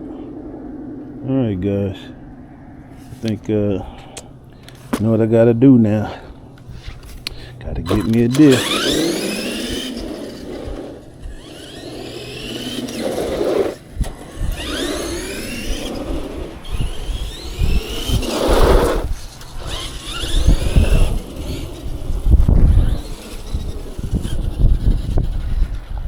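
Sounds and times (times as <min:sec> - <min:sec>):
toy truck rumbling over rough ground: 0:06.9 - 0:26.0
electric motor whining: 0:07.1 - 0:26.0.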